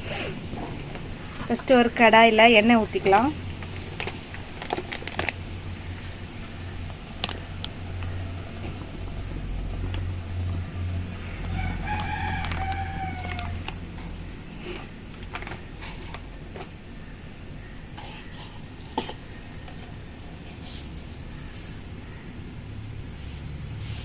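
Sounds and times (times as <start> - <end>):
steady low hum: 0.0 - 24.0
rooster crowing: 10.5 - 14.5
sharp clicks: 11.4 - 13.8.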